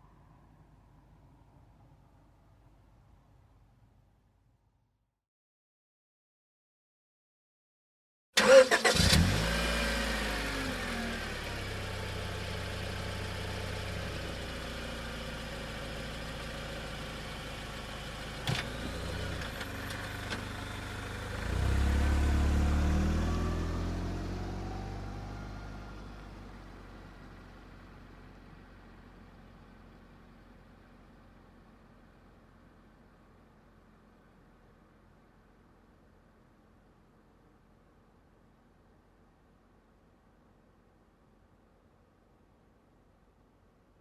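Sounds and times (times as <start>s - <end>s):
engine revving: 8.4s - 11.8s, 18.6s - 26.3s
car engine starting and idling: 8.4s - 37.8s.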